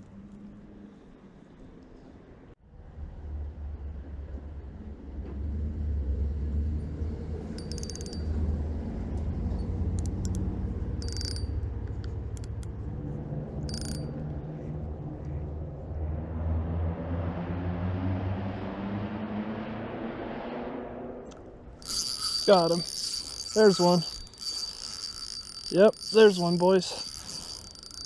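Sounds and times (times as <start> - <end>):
fishing reel gears ticking: 7.4 - 12.9, 13.5 - 14.3, 21.8 - 28.0.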